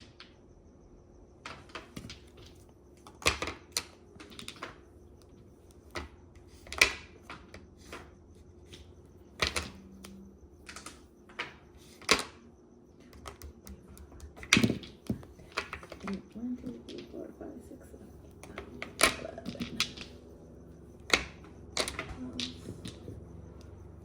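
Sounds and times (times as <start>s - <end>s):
mahjong tiles clicking: 1.5s - 12.4s, 13.1s - 17.3s, 17.9s - 20.3s.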